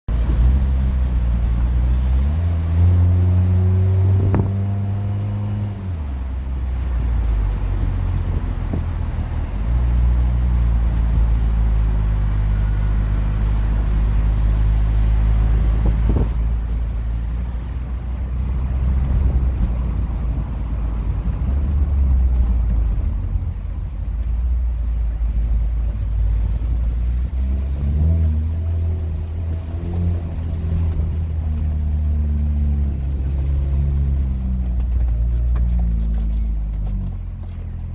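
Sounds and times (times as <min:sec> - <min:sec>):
car engine revving: 0:00.1 - 0:37.9.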